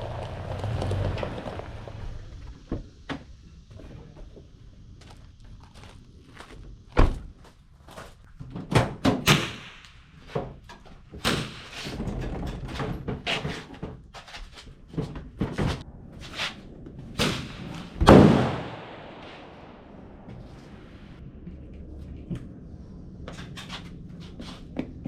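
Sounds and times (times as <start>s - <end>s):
object slamming down: 17.2s - 20.5s.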